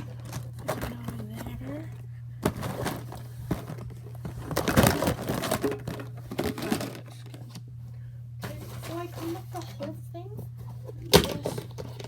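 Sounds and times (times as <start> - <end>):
steady low hum: 0.0 - 12.0
plastic toys crinkling and clicking: 2.6 - 7.6, 11.0 - 12.0.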